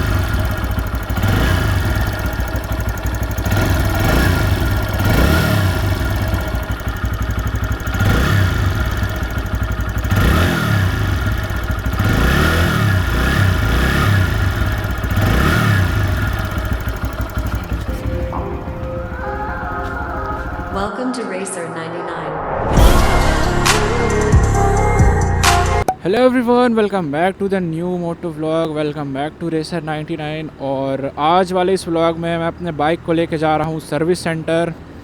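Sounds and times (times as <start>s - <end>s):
engine ticking: 0.0s - 20.9s, 23.6s - 35.0s
motorcycle engine revving: 0.0s - 20.9s.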